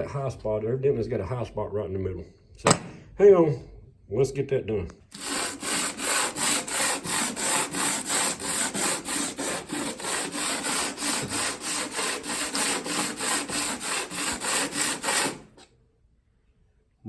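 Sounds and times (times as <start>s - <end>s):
metal plate rubbed on sandpaper: 5.2s - 15.6s.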